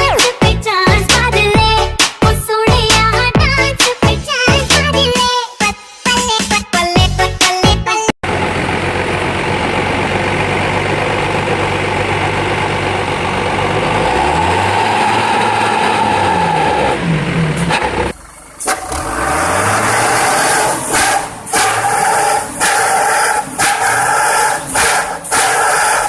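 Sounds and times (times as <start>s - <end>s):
bus engine pulling away: 8.2s - 26.0s
traffic noise: 8.2s - 26.0s.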